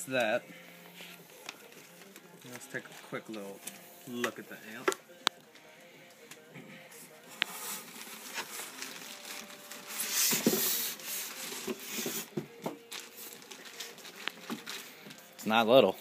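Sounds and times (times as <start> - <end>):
box packaging rustling: 0.8 - 4.9, 7.2 - 15.4.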